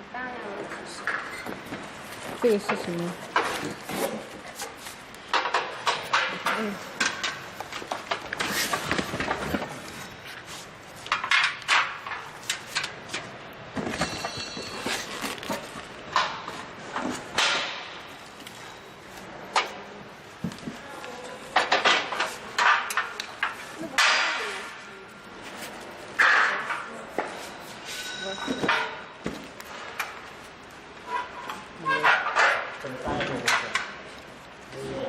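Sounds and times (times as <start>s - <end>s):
parts knocking and clattering: 5.2s - 10.2s, 11.0s - 18.0s, 21.6s - 24.6s, 28.3s - 30.2s
cardboard packaging rustling: 7.5s - 11.1s, 13.9s - 16.1s.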